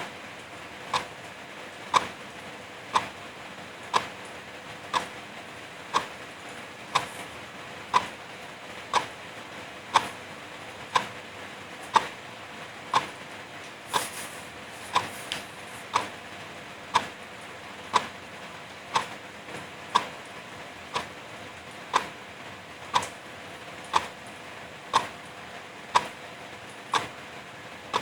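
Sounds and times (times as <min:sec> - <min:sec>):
wall clock ticking: 0:00.9 - 0:01.2, 0:01.9 - 0:02.2, 0:02.9 - 0:03.2, 0:03.9 - 0:04.2, 0:04.9 - 0:05.2, 0:05.8 - 0:06.2, 0:06.9 - 0:07.2, 0:07.9 - 0:08.2, 0:08.9 - 0:09.2, 0:09.9 - 0:10.2, 0:10.9 - 0:11.2, 0:11.9 - 0:12.2, 0:12.9 - 0:13.2, 0:14.9 - 0:15.1, 0:15.9 - 0:16.2, 0:16.9 - 0:17.2, 0:17.9 - 0:18.2, 0:18.9 - 0:19.2, 0:19.8 - 0:20.3, 0:20.9 - 0:21.3, 0:21.9 - 0:22.2, 0:22.9 - 0:24.3, 0:24.9 - 0:27.2.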